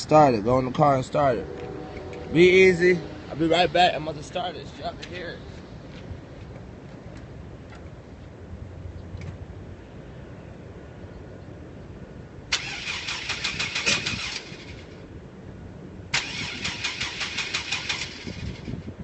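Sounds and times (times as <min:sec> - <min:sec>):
starter cranking engine: 0:12.5 - 0:14.8, 0:16.1 - 0:18.7.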